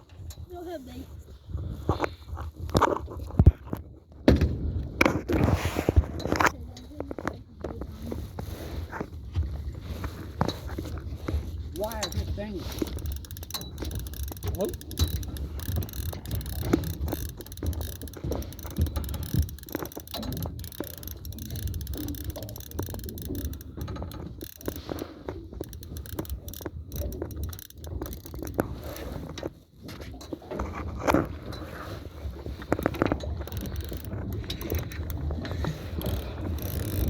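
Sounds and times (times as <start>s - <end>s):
fishing reel ratchet clicking: 11.8s - 29.3s, 32.5s - 37.0s.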